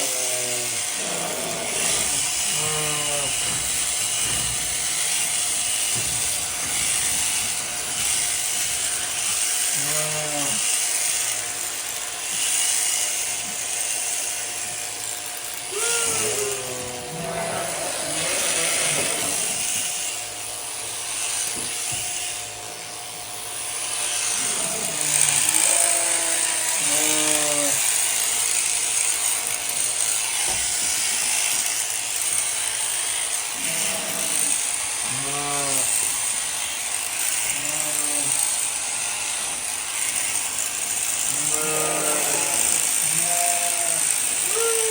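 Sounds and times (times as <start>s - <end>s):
sheep bleating: 0.0s - 3.9s, 9.6s - 10.8s, 15.6s - 19.8s, 24.2s - 28.0s, 33.5s - 36.0s, 37.5s - 38.6s, 41.2s - 44.9s
electric clippers buzzing: 0.0s - 44.9s.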